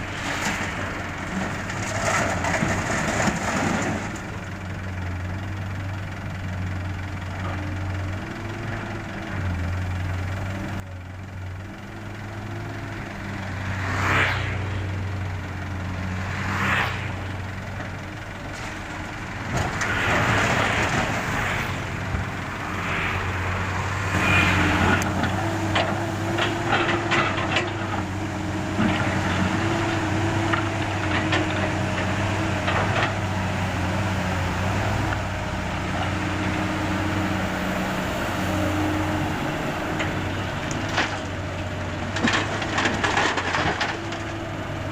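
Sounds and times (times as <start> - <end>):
excavator diesel engine running: 0.0 - 44.9
bucket scraping and clattering asphalt: 0.2 - 4.4, 42.1 - 44.4.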